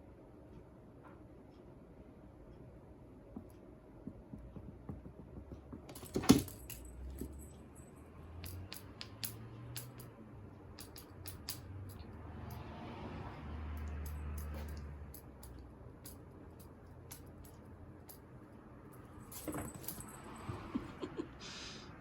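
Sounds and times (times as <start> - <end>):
small hard objects clicking: 8.4 - 10.1, 10.8 - 12.1.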